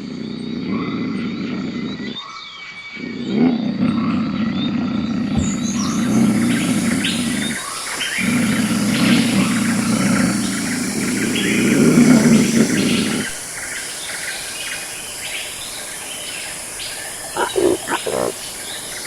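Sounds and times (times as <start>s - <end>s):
birds chirping: 2.6s - 19.0s
big cat growling: 3.0s - 7.6s, 17.2s - 18.5s.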